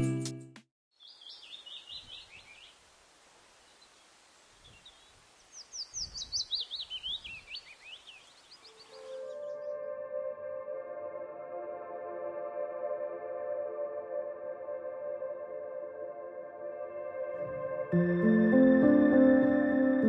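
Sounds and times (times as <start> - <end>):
songbird singing: 0.9 - 10.0
faint outdoor hiss: 1.0 - 16.6
ambient synth music: 8.7 - 20.0.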